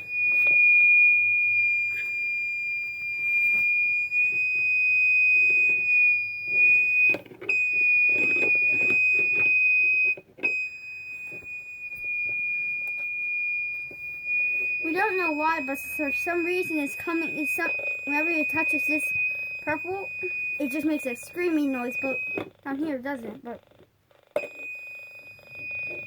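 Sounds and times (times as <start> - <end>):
high-pitched electronic tone: 14.0 - 22.5.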